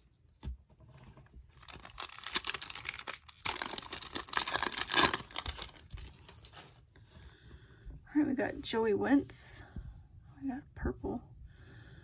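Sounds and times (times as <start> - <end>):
foil wrapper tearing and crinkling: 1.5 - 6.6.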